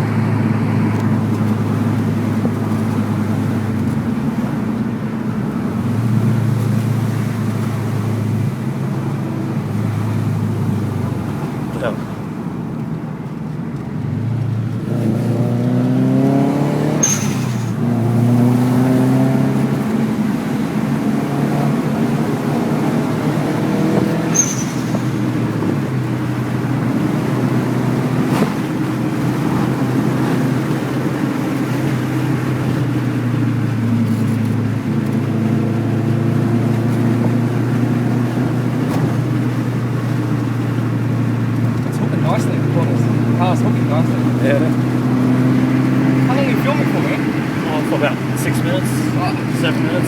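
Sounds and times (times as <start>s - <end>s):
car engine accelerating: 0.0s - 50.0s.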